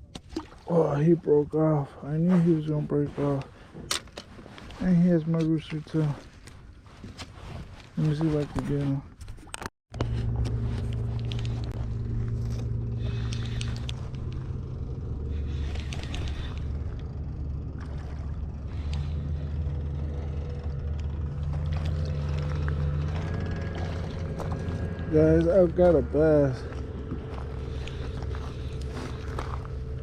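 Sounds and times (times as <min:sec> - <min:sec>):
boat engine droning: 0:00.0 - 0:09.0, 0:09.9 - 0:30.0
small clicks and scrapes: 0:06.2 - 0:14.6, 0:15.3 - 0:17.1.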